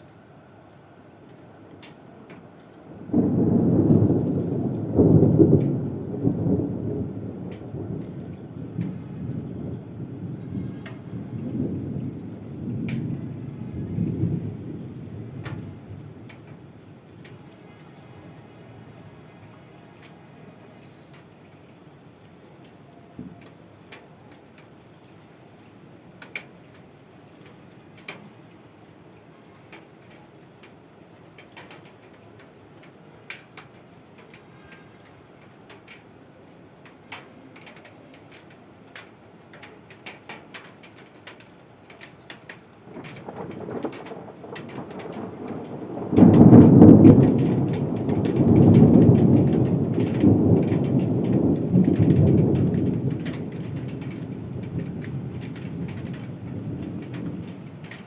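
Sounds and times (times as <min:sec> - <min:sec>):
steady rain: 0:00.0 - 0:58.0
thunder rumbling: 0:02.9 - 0:16.8, 0:42.2 - 0:58.0.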